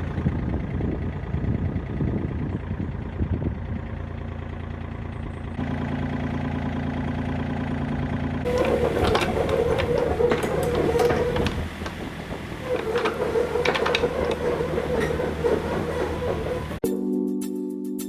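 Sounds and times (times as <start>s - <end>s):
diesel engine running: 0.0s - 16.8s
metallic knocks and clanks: 8.4s - 16.8s
steady whine: 8.5s - 16.8s.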